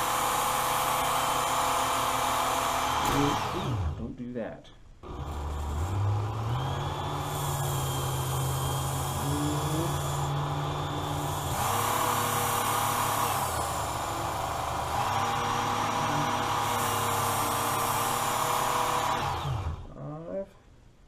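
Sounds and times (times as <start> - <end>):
blade on abrasive belt: 0.0 - 4.0, 5.0 - 19.9
knife sharpener motor humming: 5.0 - 19.9.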